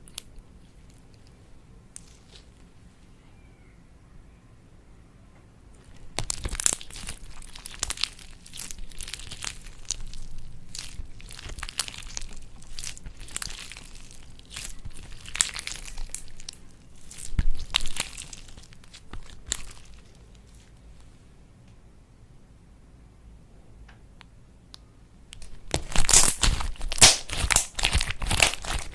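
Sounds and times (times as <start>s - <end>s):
slime crackling and popping: 0.0s - 2.6s, 5.8s - 20.8s, 25.4s - 28.9s.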